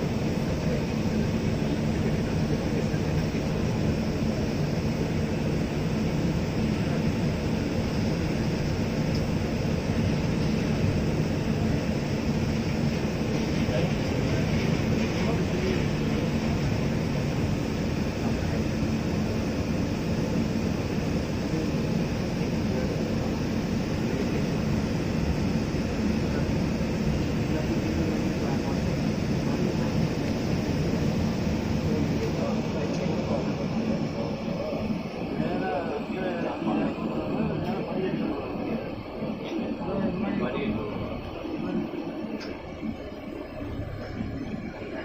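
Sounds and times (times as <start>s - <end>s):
aircraft engines droning: 0.0s - 45.0s
jet airliner cabin rumble: 0.0s - 45.0s.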